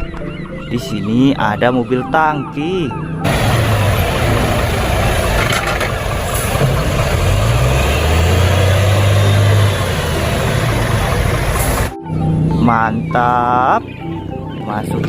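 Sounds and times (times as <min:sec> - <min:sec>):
truck engine revving: 0:03.2 - 0:12.0.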